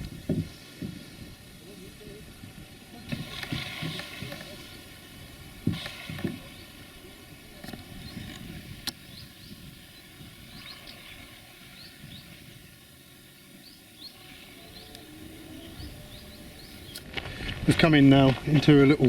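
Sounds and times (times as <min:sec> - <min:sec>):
small birds chirping: 0:07.9 - 0:17.0.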